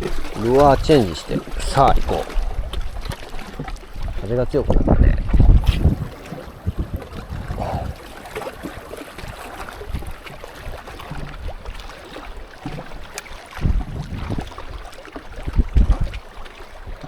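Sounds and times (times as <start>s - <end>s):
gusty wind on microphone: 3.9s - 11.9s, 13.6s - 14.8s, 15.4s - 16.2s.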